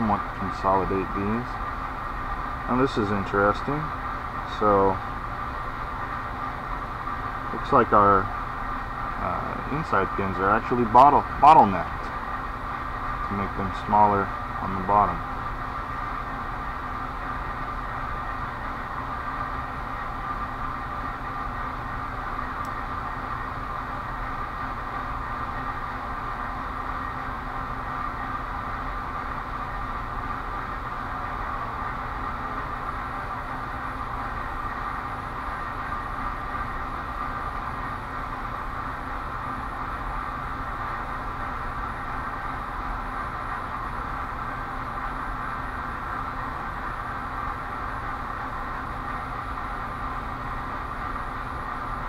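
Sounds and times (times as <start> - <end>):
steady mechanical whir: 0.0 - 52.0.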